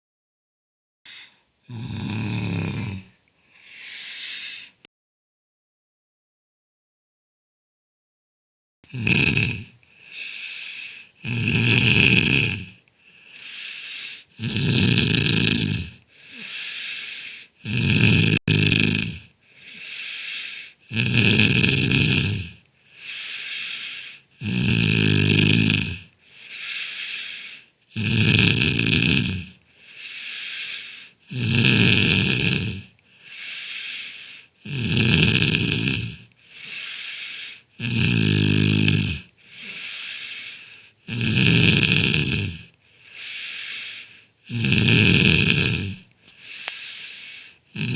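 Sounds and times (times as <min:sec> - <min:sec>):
person snoring: 0:01.1 - 0:04.9, 0:08.9 - 0:47.9.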